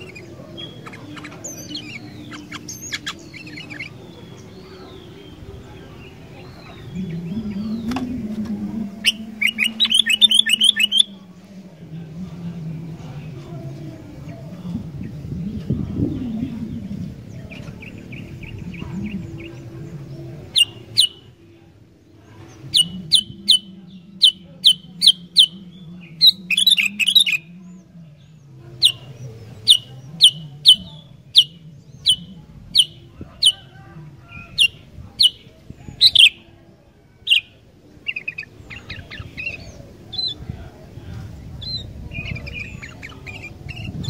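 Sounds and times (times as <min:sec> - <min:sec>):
bird chattering: 0:00.0 - 0:08.1, 0:09.0 - 0:11.2, 0:20.4 - 0:21.3, 0:22.4 - 0:27.5, 0:28.8 - 0:36.5, 0:37.2 - 0:40.4, 0:41.6 - 0:44.0
bird calling sharp notes: 0:09.0 - 0:11.1, 0:28.8 - 0:33.8.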